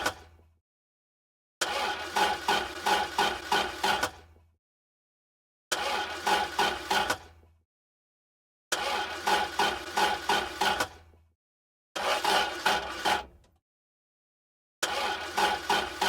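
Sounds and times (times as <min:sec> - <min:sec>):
car starter cranking engine: 0:01.6 - 0:04.2, 0:05.7 - 0:07.3, 0:08.7 - 0:11.0, 0:12.0 - 0:13.5, 0:14.8 - 0:16.0.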